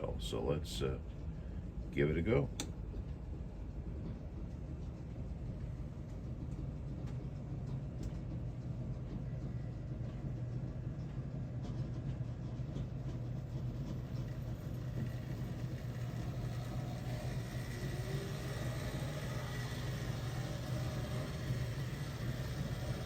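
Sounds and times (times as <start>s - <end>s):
model train motor and gear hum: 12.7s - 23.0s
wheels rolling on track: 12.7s - 23.0s.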